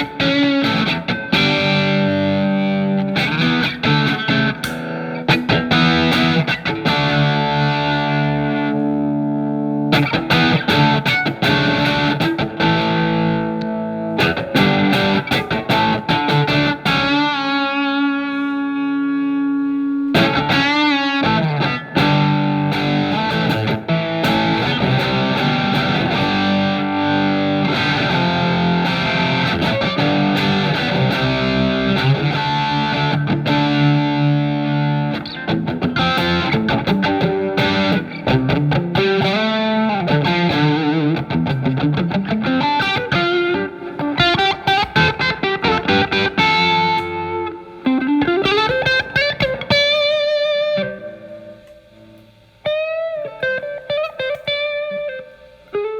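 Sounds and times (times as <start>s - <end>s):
distorted electric guitar lead: 0.0s - 55.9s.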